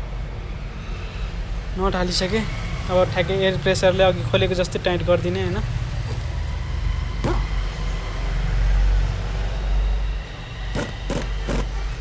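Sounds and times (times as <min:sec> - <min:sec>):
pneumatic impact wrench bursts: 0:07.2 - 0:07.8, 0:10.7 - 0:12.0.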